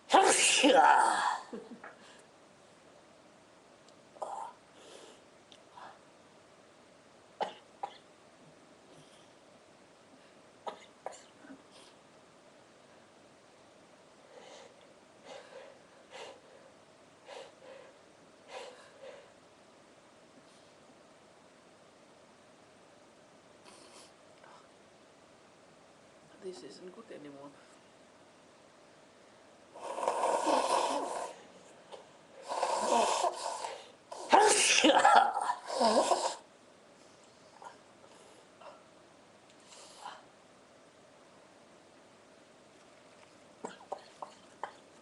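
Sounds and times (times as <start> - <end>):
person drawn-out voiced sounds: 0.1 - 1.6
person sneezing: 0.1 - 1.6, 32.7 - 36.4
person sniffing hard: 32.4 - 34.6.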